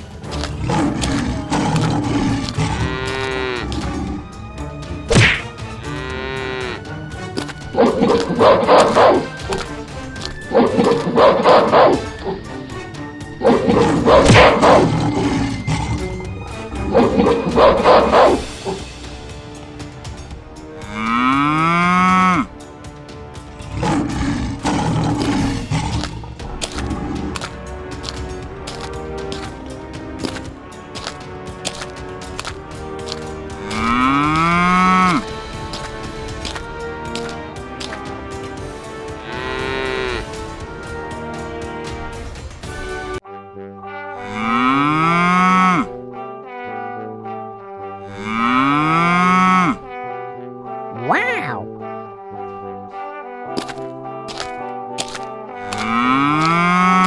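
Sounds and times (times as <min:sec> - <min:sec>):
background music: 0:00.0 - 0:57.0
cow mooing: 0:00.6 - 0:04.0, 0:05.8 - 0:06.9, 0:44.2 - 0:45.9, 0:48.1 - 0:49.8, 0:55.8 - 0:57.0
sharp whack: 0:05.1 - 0:05.5.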